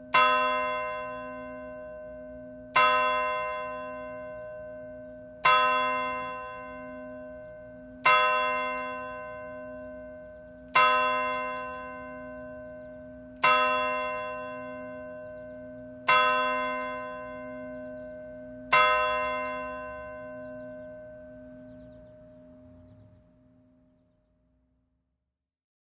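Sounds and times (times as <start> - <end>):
church bell tolling: 0.0 - 24.6
low pulsing hum: 19.7 - 24.6.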